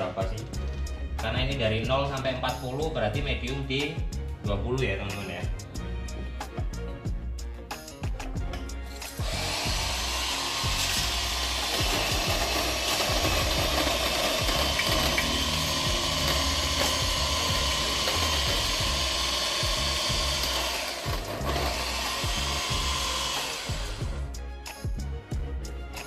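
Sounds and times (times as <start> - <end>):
electric coffee grinder running: 9.1 - 24.3.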